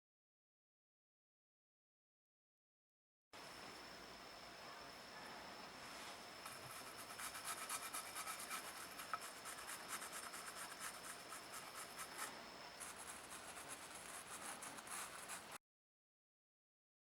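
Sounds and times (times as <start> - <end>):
scraping strokes on ceramic: 5.3 - 15.6.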